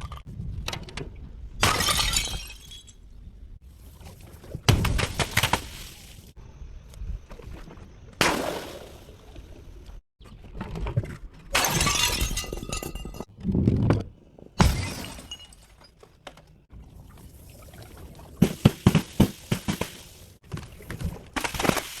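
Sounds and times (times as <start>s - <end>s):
glass bottles smashing: 1.6s - 3.0s, 11.6s - 13.3s, 14.6s - 16.0s
glass shards clattering: 11.6s - 13.3s.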